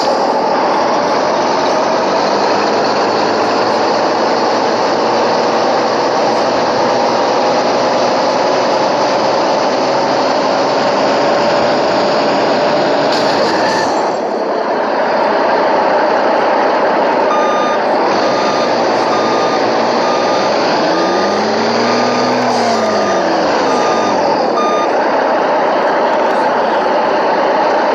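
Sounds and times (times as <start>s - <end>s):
heavy vehicle engine running: 0.0s - 27.9s
reversing alarm beeping: 13.4s - 14.2s, 17.2s - 25.1s.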